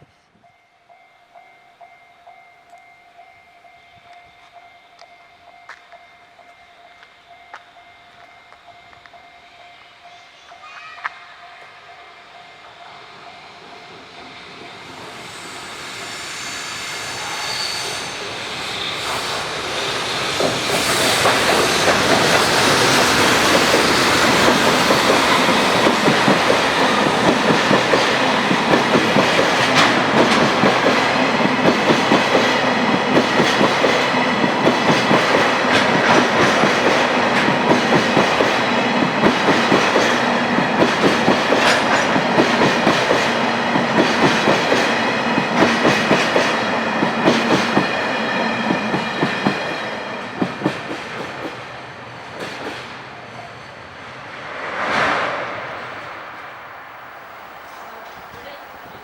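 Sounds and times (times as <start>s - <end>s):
freight train passing: 0.0s - 59.0s.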